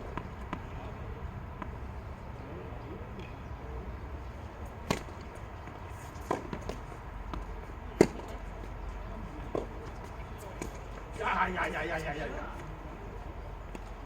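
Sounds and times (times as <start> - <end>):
tennis ball bouncing on court: 0.1 - 0.9, 1.6 - 1.8, 4.8 - 8.4
tennis ball struck by rackets: 4.8 - 8.4.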